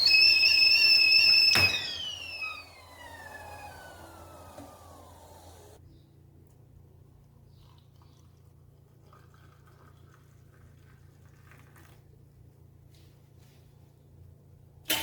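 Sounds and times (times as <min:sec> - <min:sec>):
steady low hum: 0:00.0 - 0:05.8.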